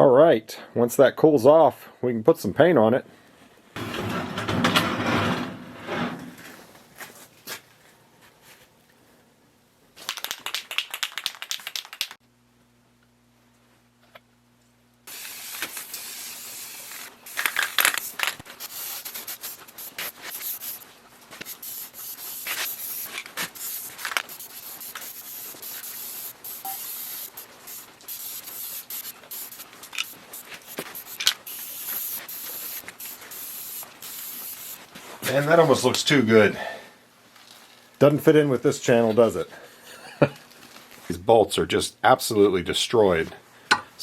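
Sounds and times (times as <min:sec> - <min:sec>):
spray paint can hissing: 0:15.1 - 0:35.4.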